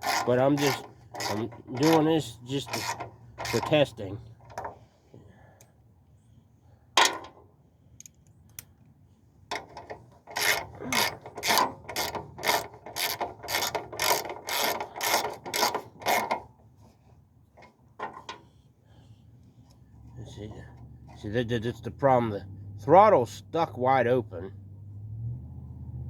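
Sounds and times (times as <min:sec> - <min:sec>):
mechanical ratcheting clicks: 0:10.3 - 0:16.4.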